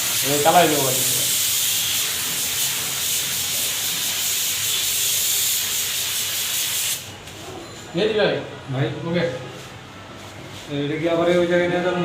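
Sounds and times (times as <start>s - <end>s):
spray gun hissing: 0.0s - 7.1s.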